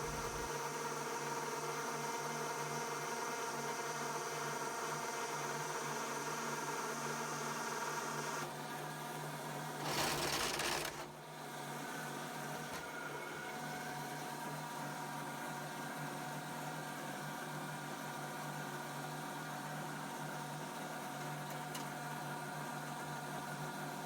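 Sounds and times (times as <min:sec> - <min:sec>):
machinery humming: 0:00.0 - 0:00.5.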